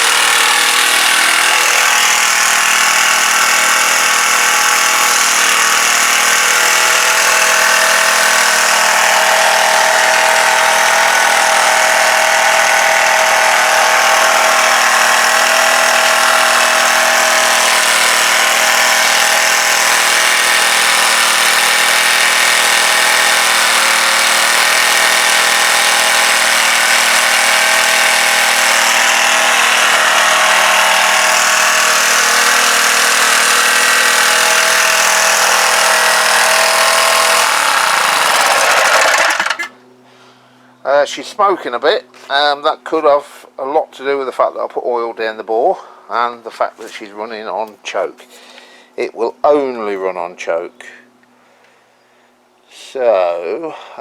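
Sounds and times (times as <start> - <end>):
small petrol engine running: 0.0 - 40.0.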